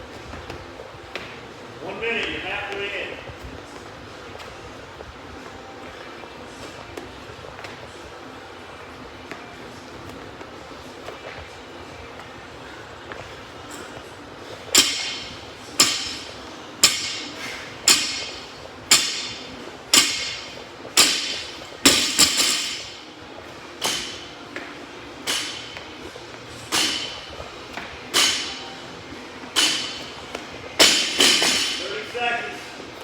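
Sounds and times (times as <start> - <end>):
barbell plates striking floor: 14.7 - 23.0, 30.8 - 31.8.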